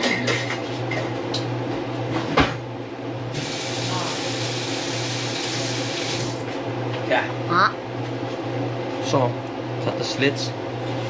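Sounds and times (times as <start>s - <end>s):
kitchen tap running: 3.3s - 6.4s.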